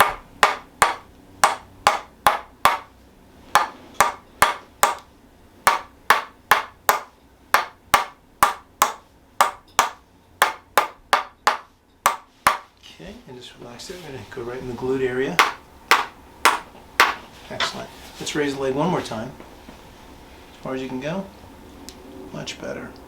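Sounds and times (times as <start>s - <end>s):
wooden hammer tapping wooden wedge: 0.0s - 2.9s, 3.6s - 5.1s, 5.7s - 12.7s, 15.4s - 17.2s.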